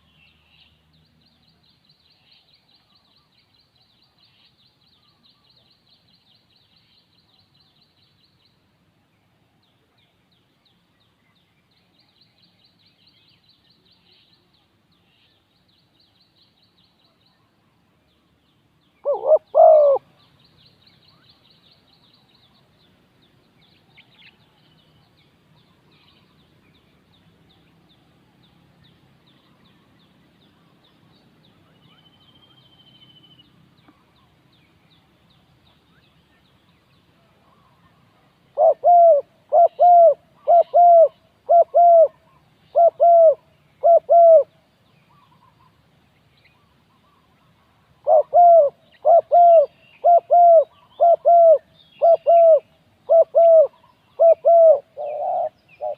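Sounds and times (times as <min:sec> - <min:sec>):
dove cooing: 0:19.0 - 0:20.0, 0:38.5 - 0:44.5, 0:48.0 - 0:55.9.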